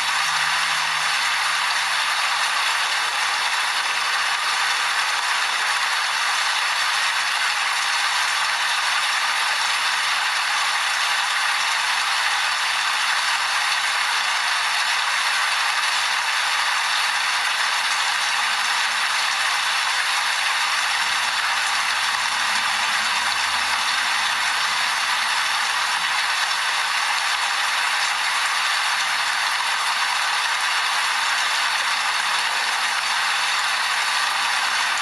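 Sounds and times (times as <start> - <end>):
steady rain falling: 17.7 - 35.0.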